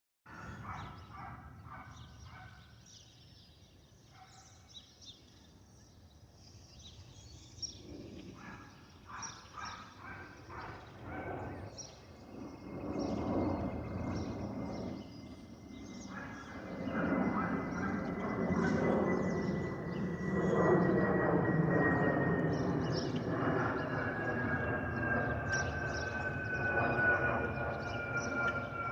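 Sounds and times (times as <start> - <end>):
jet engines warbling moan: 10.2 - 28.9.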